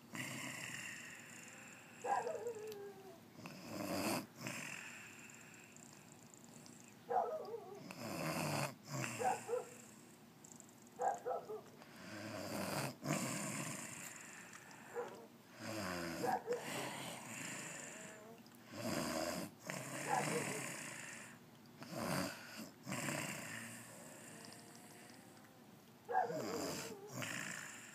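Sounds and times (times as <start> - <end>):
woman snoring: 0.0 - 6.1, 7.8 - 10.0, 12.0 - 25.5, 26.3 - 27.9.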